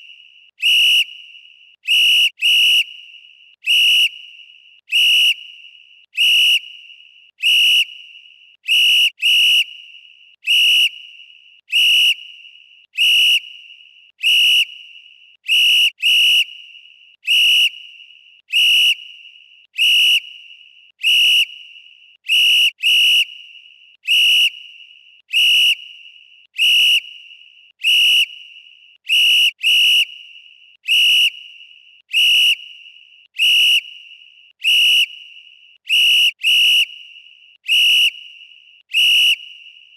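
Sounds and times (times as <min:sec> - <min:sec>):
referee's whistle blasts: 0:00.6 - 0:01.2, 0:27.9 - 0:39.9.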